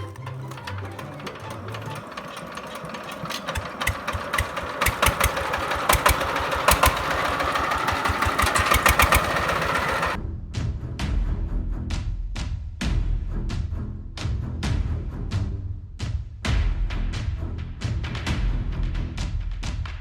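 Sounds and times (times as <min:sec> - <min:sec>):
small diesel engine knocking: 0:00.0 - 0:10.2.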